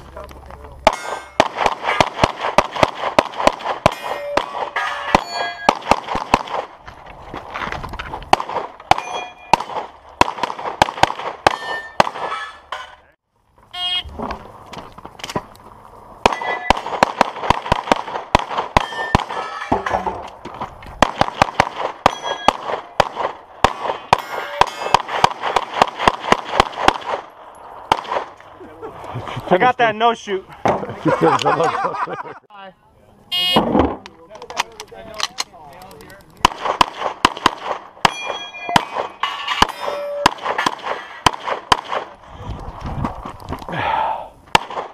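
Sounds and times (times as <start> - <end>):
pistol shots: 0.8 - 6.8, 8.3 - 12.4, 16.2 - 19.8, 21.0 - 28.4, 36.4 - 42.2, 44.5 - 44.9
steel plates clanging: 0.9 - 2.0, 3.9 - 5.8, 9.0 - 9.6, 11.5 - 13.2, 18.8 - 20.3, 22.1 - 22.6, 24.2 - 25.0, 38.1 - 41.3.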